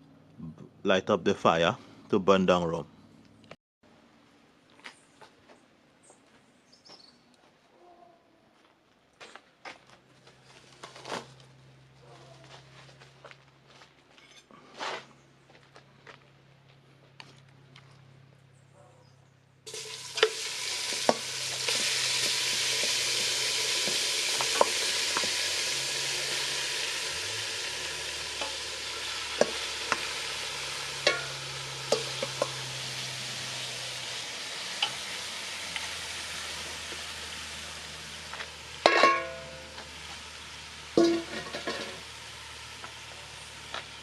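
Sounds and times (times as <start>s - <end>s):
oil sizzling in a pan: 19.7s - 44.0s.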